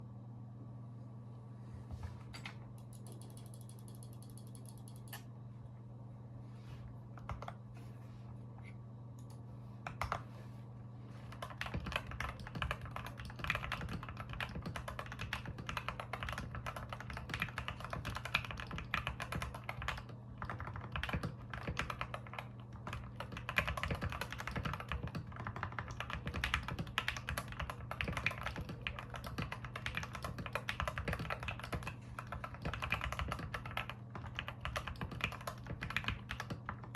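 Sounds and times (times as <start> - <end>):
steady low hum: 0.0 - 36.9
mechanical keyboard typing: 2.8 - 5.2, 11.3 - 36.9.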